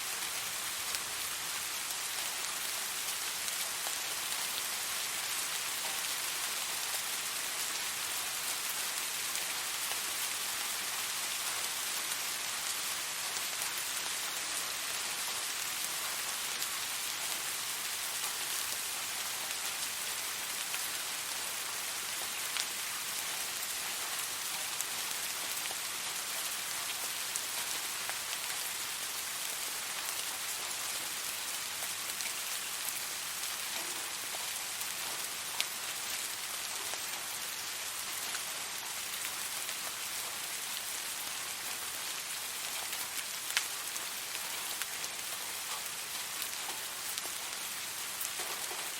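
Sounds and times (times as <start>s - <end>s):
steady rain hiss: 0.0s - 48.9s
raindrops striking close: 38.1s - 48.9s.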